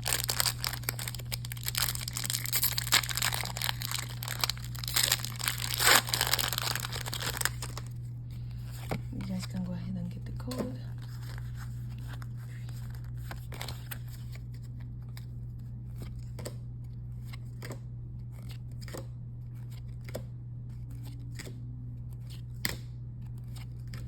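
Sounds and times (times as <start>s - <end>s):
low hum: 0.0s - 17.3s.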